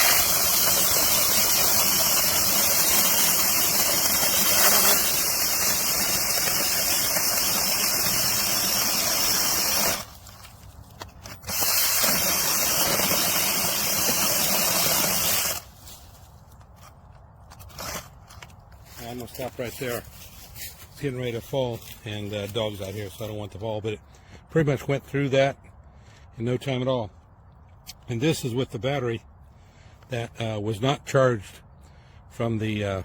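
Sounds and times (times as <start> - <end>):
electric chainsaw cutting log: 0.0 - 10.4, 11.2 - 15.8.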